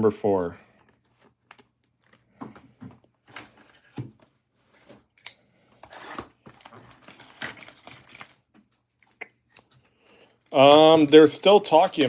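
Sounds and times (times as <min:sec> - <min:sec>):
packaging crinkling and rustling: 0:06.1 - 0:12.0.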